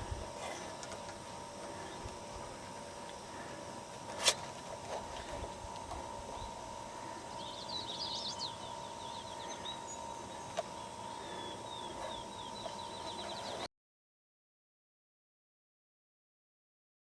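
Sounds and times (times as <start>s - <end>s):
faint steady tone: 0.0s - 13.7s
songbird singing: 5.1s - 13.7s.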